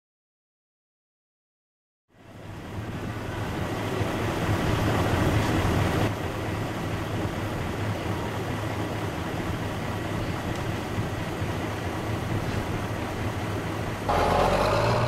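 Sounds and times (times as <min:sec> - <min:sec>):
snowcat engine rumble: 0:02.3 - 0:15.0
rushing noise: 0:14.1 - 0:15.0.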